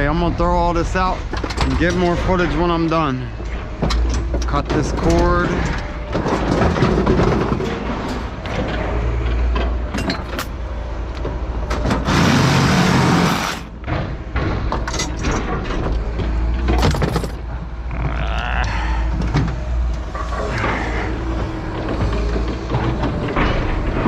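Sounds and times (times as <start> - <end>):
low engine rumble: 0.0 - 24.0
scrap metal clanking and crashing: 0.1 - 10.7, 11.6 - 17.7.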